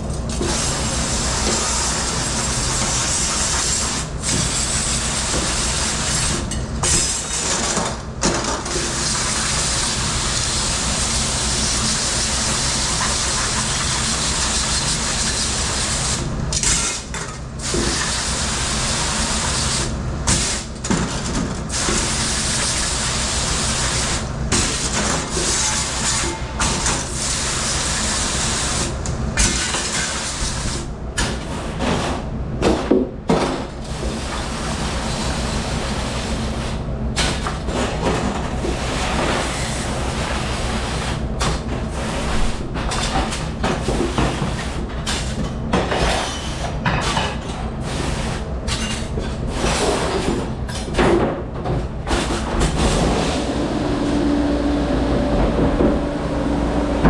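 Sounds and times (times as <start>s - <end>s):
steady machine hum: 52.8s - 57.0s.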